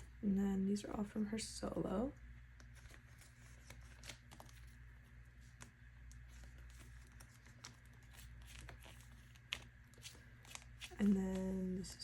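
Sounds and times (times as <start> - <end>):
cards rustling in plastic sleeves: 2.5 - 12.0.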